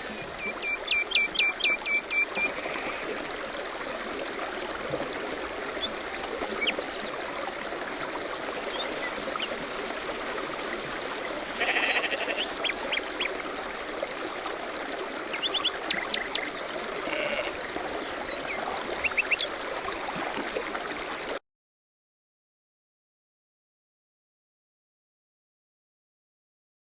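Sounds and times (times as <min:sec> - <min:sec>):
running stream: 0:00.0 - 0:21.4.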